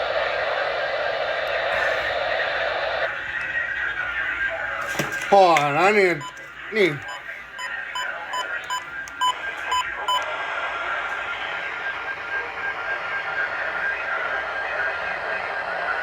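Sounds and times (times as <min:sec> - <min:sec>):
radio hiss: 0:00.0 - 0:16.0
radio receiver beeping: 0:01.5 - 0:10.3.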